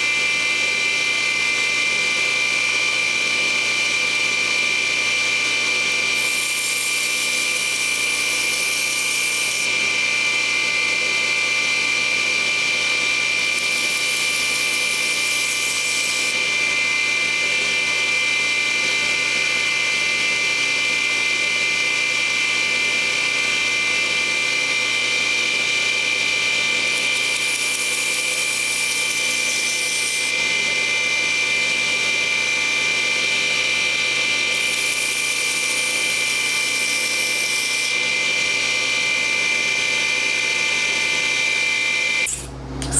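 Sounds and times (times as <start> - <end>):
power tool motor whining: 0.0 - 42.9.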